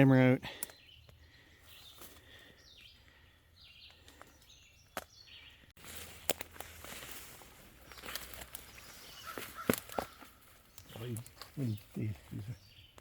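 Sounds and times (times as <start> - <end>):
faint bird calls: 7.8 - 13.0.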